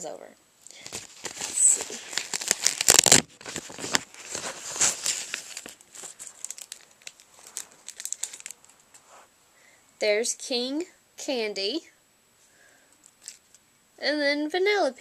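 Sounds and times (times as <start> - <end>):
paper bag rustling: 0.7 - 8.8.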